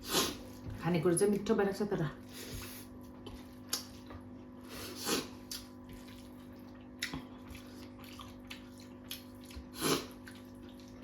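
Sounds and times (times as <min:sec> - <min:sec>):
steady low hum: 0:00.0 - 0:11.0
mouth chewing and smacking: 0:05.2 - 0:11.0.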